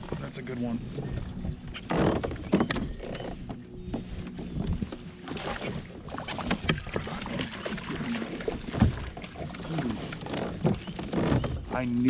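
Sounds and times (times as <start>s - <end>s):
knocks and clicks on kayak: 1.1s - 12.0s
water splashing: 4.8s - 12.0s.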